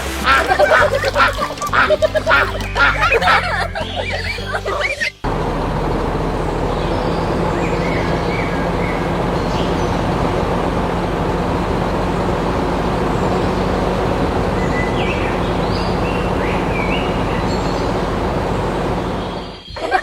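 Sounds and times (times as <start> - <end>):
high chirping squeaks: 0.4 - 5.2
machine running with low hum: 5.2 - 19.6.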